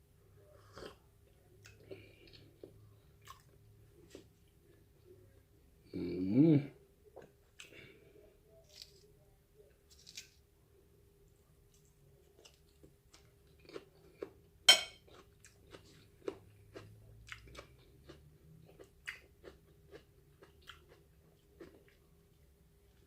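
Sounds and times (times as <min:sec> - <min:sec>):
person chewing and crunching food: 0:00.6 - 0:04.9, 0:07.2 - 0:09.1, 0:09.9 - 0:10.4, 0:11.6 - 0:23.0.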